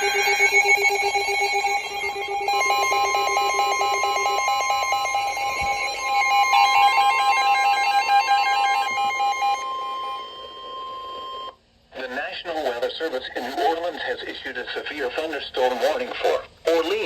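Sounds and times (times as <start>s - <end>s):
rapid electronic alarm beeping: 0.0s - 11.6s
steady alarm tone: 0.0s - 11.9s.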